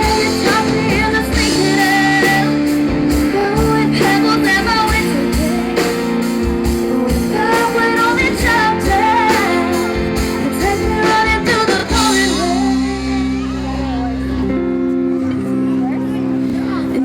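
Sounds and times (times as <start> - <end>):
steady drum beat: 0.0 - 13.8
bass guitar: 0.0 - 17.0
electric guitar: 0.0 - 17.0
person singing: 0.0 - 17.0.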